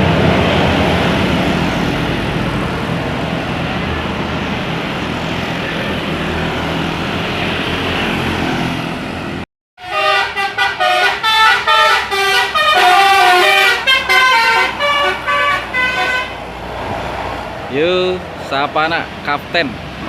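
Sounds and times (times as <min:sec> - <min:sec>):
bus engine and road noise: 0:00.0 - 0:20.0
musical air horn tune: 0:09.8 - 0:16.4.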